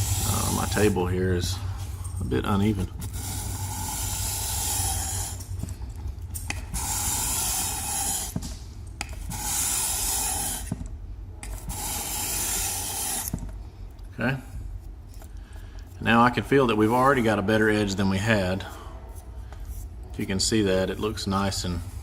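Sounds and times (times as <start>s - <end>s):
knife grinding on whetstone: 0.0s - 1.0s, 2.8s - 8.5s, 9.1s - 10.8s, 11.4s - 13.5s.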